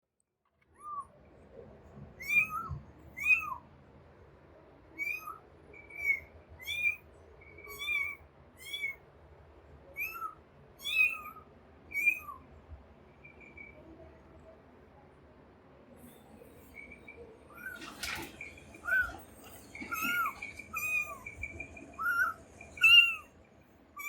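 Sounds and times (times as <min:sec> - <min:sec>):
kitten meowing: 0:02.2 - 0:03.6, 0:05.0 - 0:07.0, 0:07.6 - 0:09.0, 0:10.0 - 0:12.4, 0:19.9 - 0:23.3.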